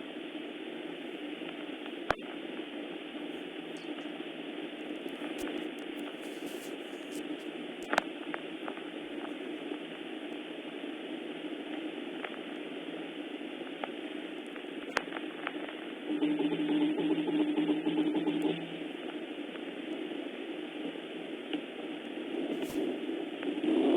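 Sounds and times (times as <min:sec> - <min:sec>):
rain hissing: 0:00.7 - 0:11.2, 0:22.4 - 0:23.9.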